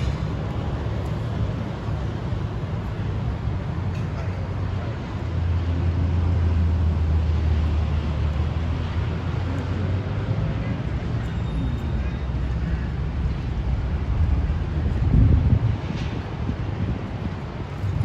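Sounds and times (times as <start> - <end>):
wind buffeting microphone: 12.9 - 18.0.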